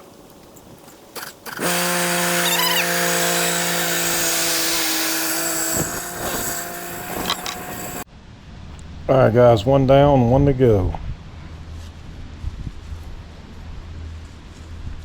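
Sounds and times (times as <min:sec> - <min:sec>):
small gas engine running: 0:01.2 - 0:08.0.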